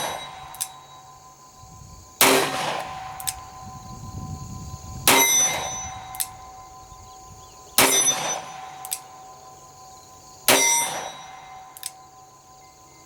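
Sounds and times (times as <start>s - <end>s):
ringing tone after shot: 0.0s - 1.3s, 5.1s - 9.7s, 10.5s - 13.0s.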